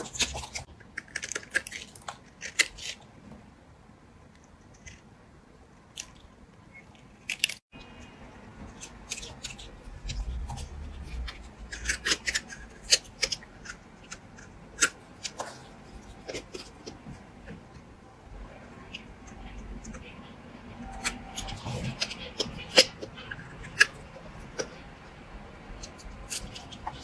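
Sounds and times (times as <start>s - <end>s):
blade cutting soap: 8.6s - 17.9s.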